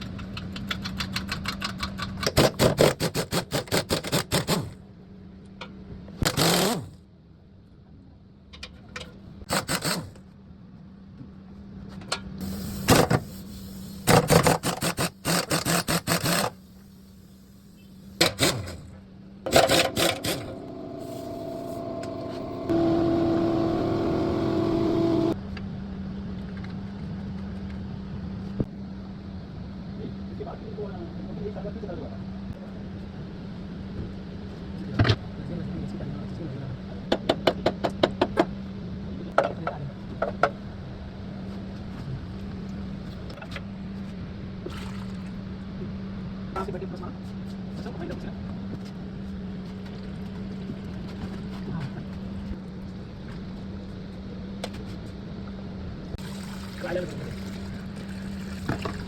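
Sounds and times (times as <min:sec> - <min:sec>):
steady low hum: 0:16.5 - 0:25.4
steady whirring tone: 0:19.4 - 0:25.4.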